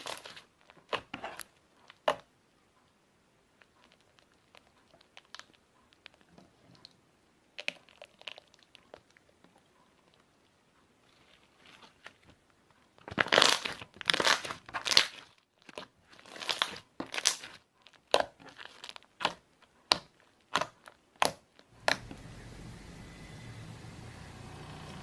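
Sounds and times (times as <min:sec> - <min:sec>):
slime squishing: 0:00.0 - 0:02.3, 0:07.6 - 0:10.3, 0:13.0 - 0:22.4.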